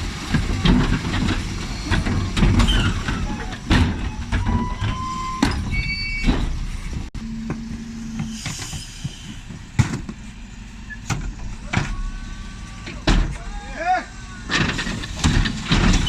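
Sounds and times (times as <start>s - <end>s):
refuse truck running: 0.0s - 16.0s
bins banging against lifter: 0.2s - 13.6s, 14.4s - 16.0s.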